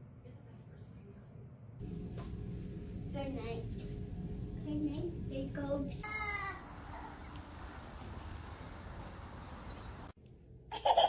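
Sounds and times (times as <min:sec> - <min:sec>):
baby laughing: 0:10.7 - 0:11.0.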